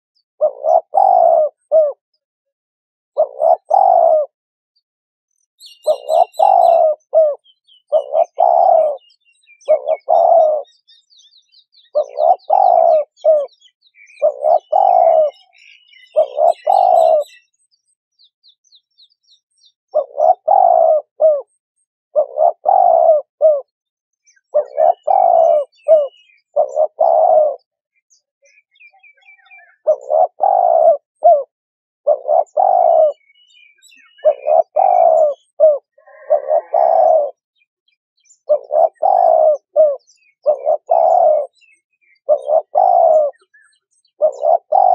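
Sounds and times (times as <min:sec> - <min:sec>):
small birds chirping: 0:00.2 - 0:02.3, 0:03.1 - 0:04.4, 0:05.3 - 0:44.9
dove cooing: 0:00.4 - 0:02.0, 0:03.2 - 0:04.4, 0:05.6 - 0:10.9, 0:11.8 - 0:17.5, 0:19.9 - 0:23.7, 0:24.4 - 0:27.8, 0:29.0 - 0:37.4, 0:38.4 - 0:44.9.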